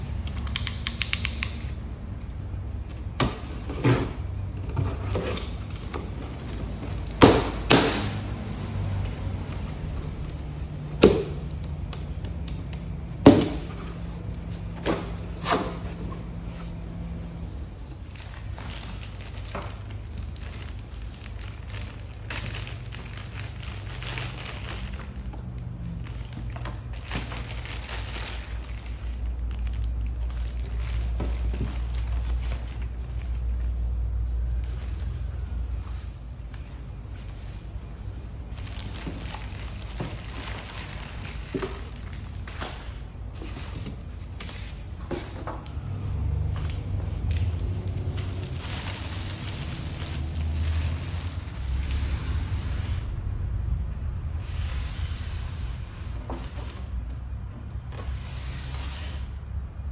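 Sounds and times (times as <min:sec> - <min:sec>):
steady low hum: 0:00.0 - 0:59.9
packaging crinkling and rustling: 0:02.9 - 0:53.2
steady low rumble: 0:04.2 - 0:59.9.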